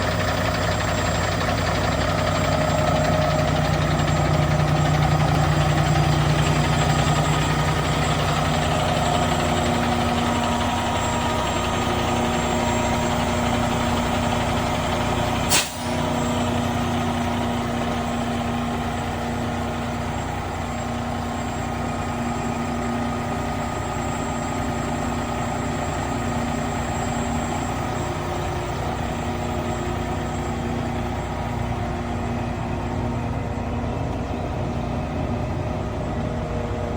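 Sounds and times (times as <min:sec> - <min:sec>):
diesel truck engine running: 0:00.0 - 0:36.9.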